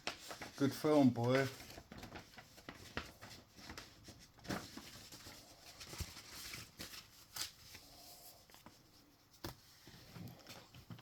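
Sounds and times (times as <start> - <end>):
soft rustling: 0.0 - 11.0.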